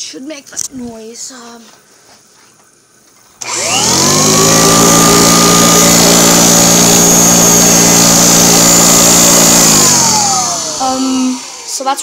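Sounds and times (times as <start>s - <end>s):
vacuum cleaner motor whining: 3.4s - 12.0s.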